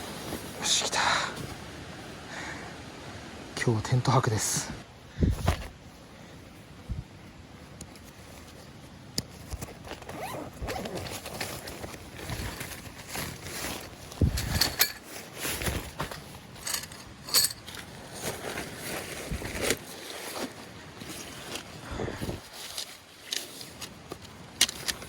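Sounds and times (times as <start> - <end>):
fabric and gear rustling: 0.0 - 0.7, 5.3 - 6.0, 7.6 - 25.0.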